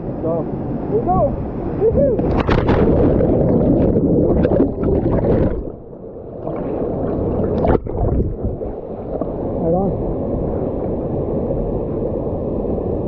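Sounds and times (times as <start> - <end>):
water churning and gurgling: 1.0 - 12.2
sharp water splash: 2.2 - 5.8, 6.4 - 9.3.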